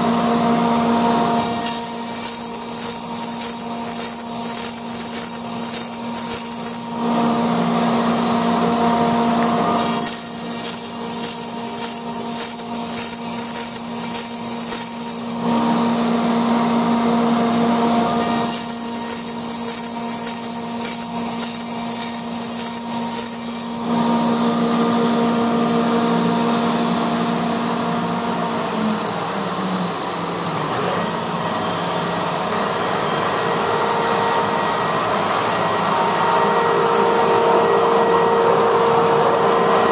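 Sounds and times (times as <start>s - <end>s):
router cutting foam: 0.0s - 39.9s.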